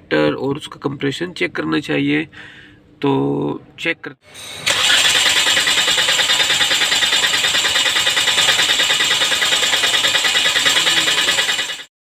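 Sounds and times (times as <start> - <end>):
fuel injectors clicking: 4.7 - 11.9.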